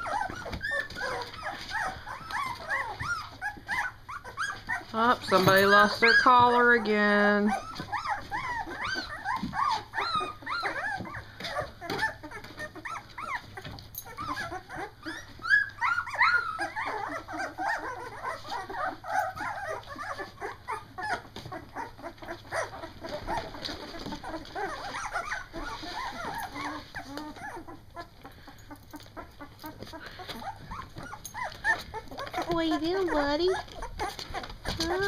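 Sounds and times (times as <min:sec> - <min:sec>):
puppies whimpering and squealing: 0:00.0 - 0:35.0.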